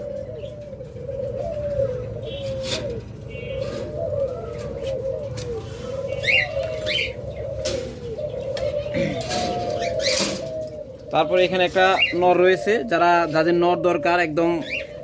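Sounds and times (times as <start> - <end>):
cage birds chirping: 0.0 - 15.0
doves cooing: 0.0 - 15.0.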